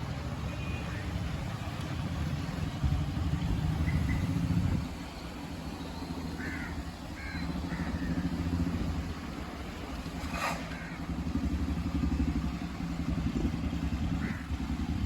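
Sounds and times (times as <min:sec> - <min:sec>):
vehicle engine rumbling: 0:00.0 - 0:15.0
bird calling: 0:05.8 - 0:08.6, 0:14.2 - 0:14.6.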